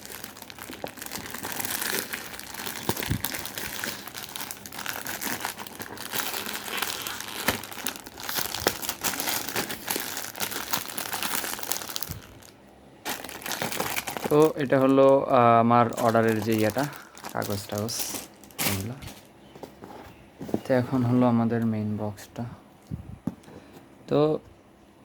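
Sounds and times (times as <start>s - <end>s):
packaging crinkling and tearing: 0.0s - 19.3s.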